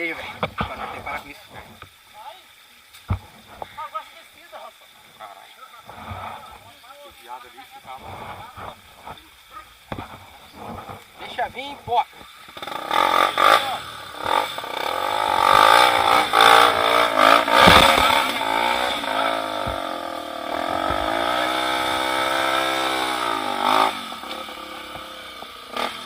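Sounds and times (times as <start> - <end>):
motorcycle engine revving: 12.4 - 26.0.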